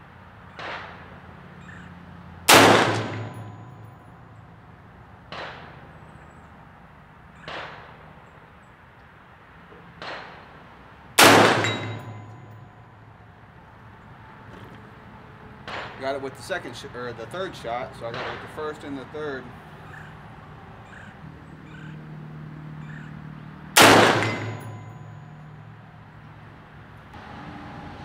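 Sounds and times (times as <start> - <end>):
rifle shots: 0.5 - 1.2, 2.5 - 3.6, 5.3 - 5.9, 7.4 - 8.1, 11.2 - 12.5, 18.1 - 18.6, 23.8 - 25.0
bullets clanging on steel plate: 2.7 - 4.2, 11.4 - 12.8, 23.8 - 25.6.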